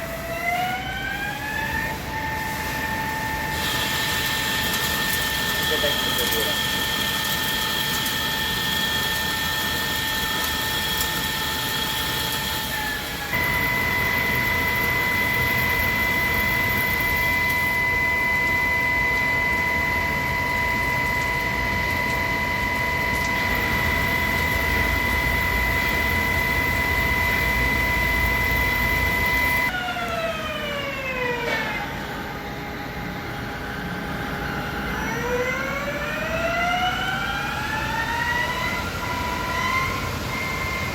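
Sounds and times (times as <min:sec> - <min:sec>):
lathe spindle whining: 0:00.0 - 0:31.4, 0:34.3 - 0:40.9
machining hiss: 0:02.4 - 0:17.3.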